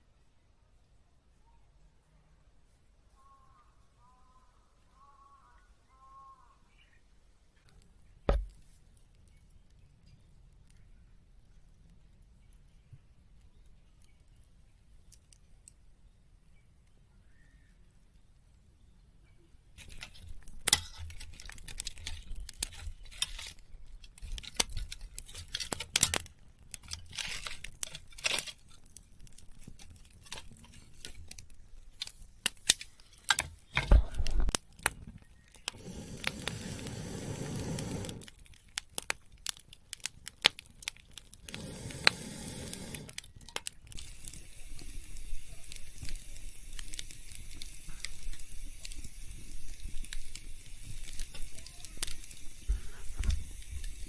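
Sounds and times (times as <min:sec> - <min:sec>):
crinkling and rustling: 0:19.8 - 0:54.0.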